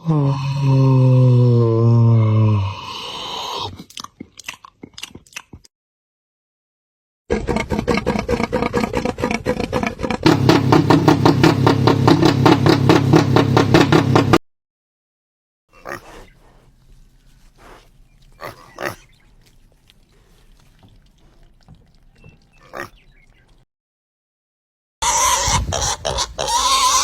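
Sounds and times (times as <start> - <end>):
pig grunting rapidly: 7.3 - 14.4, 15.7 - 23.1
quiet pig calls: 15.7 - 23.6, 25.0 - 27.0.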